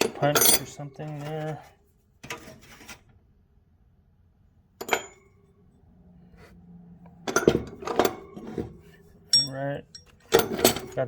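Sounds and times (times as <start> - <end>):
steel tools clinking: 0.0 - 1.7, 9.3 - 11.0.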